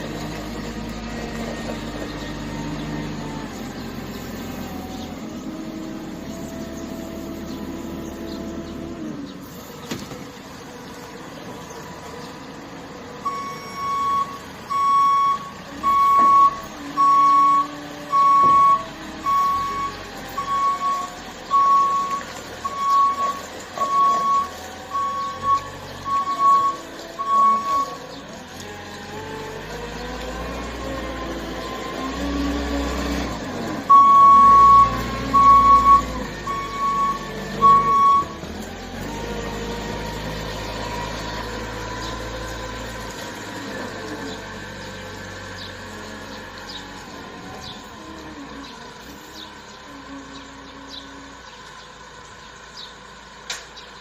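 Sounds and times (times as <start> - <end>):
work vehicle engine running: 0.0 - 54.0
reversing alarm beeping: 13.2 - 28.0, 33.9 - 38.5.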